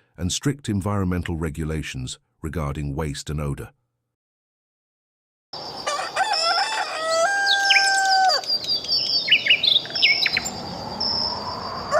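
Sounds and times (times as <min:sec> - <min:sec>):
rooster crowing: 0:05.8 - 0:08.5.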